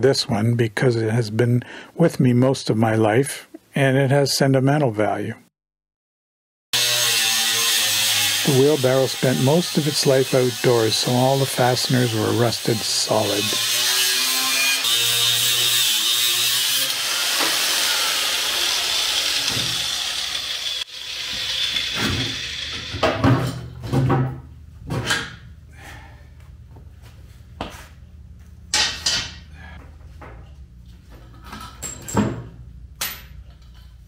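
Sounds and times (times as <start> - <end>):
power tool running: 6.8 - 23.4
parts knocking and clattering: 28.7 - 34.0.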